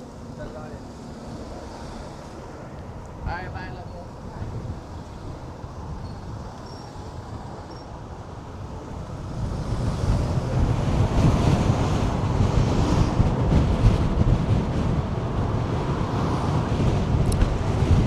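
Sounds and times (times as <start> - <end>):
wind buffeting microphone: 0.0 - 18.0.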